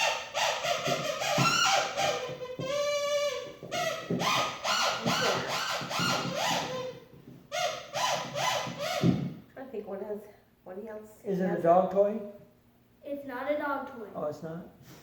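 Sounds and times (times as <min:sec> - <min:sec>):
squeaky toy bird squeaks: 0:00.0 - 0:09.2.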